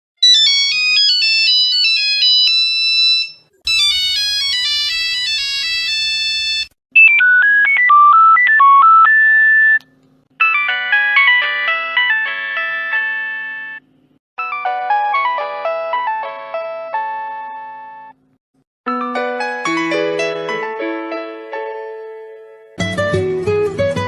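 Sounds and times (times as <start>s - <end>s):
mobile phone ringtone melodies: 0.2s - 9.8s, 10.4s - 13.8s, 14.4s - 18.2s.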